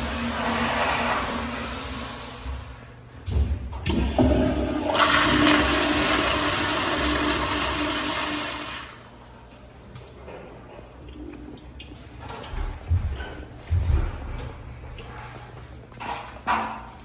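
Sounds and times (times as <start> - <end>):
toilet water rushing: 0.0 - 2.9, 3.8 - 9.1.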